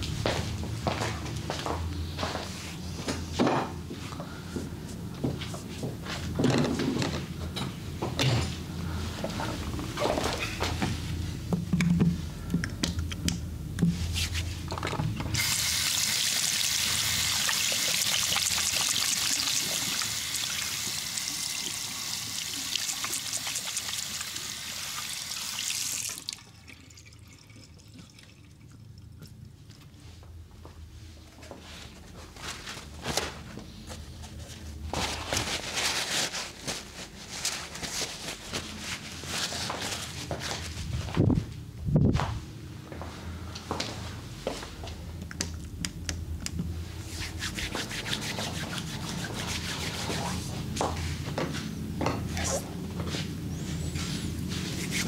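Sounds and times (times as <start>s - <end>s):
water running from a tap: 15.4s - 28.7s.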